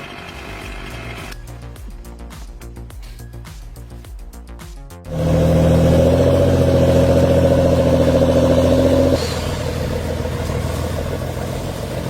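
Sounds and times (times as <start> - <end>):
music: 0.3 - 7.0
heavy machine engine running: 5.1 - 12.0.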